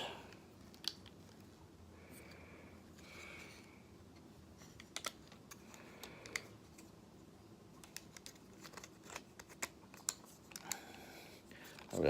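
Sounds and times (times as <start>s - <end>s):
plastic parts clicking and snapping: 0.6s - 1.4s, 4.2s - 6.9s, 7.7s - 11.0s.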